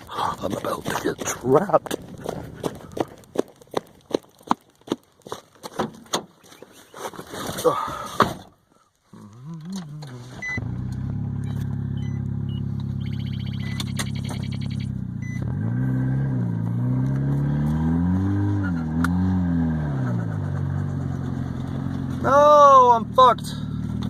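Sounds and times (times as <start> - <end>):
car engine revving: 9.2 - 24.0
short electronic beeps: 10.4 - 10.6, 11.4 - 15.5.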